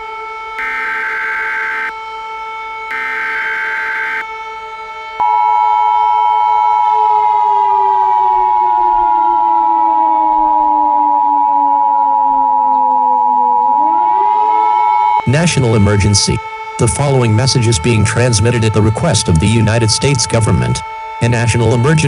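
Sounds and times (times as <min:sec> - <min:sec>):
digital data burst: 0:00.6 - 0:01.9, 0:02.9 - 0:04.2
siren winding down: 0:00.6 - 0:01.9, 0:02.9 - 0:04.2
two-tone attention signal: 0:00.6 - 0:01.9, 0:02.9 - 0:04.2.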